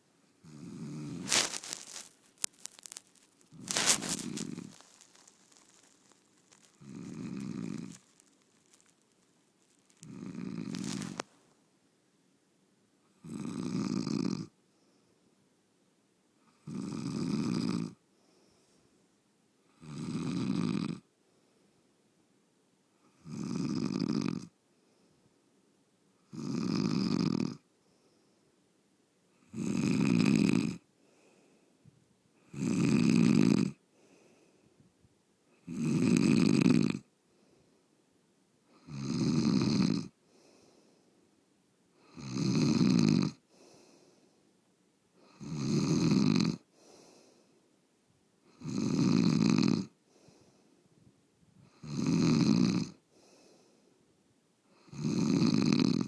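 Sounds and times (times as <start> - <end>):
person snoring loudly: 6.8 - 8.0, 54.9 - 56.0.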